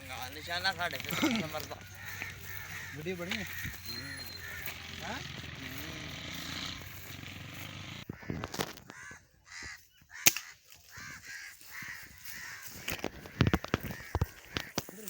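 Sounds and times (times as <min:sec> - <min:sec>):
crows cawing: 0:00.0 - 0:15.0.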